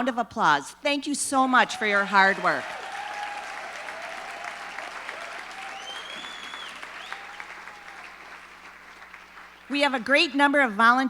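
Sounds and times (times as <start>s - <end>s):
audience applauding: 1.6s - 9.8s.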